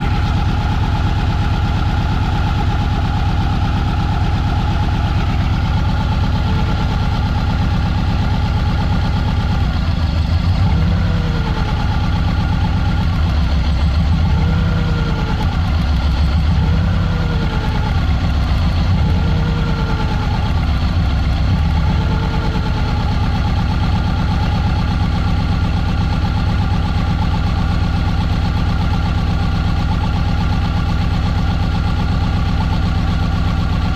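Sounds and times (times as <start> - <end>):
car engine idling: 0.0 - 33.9.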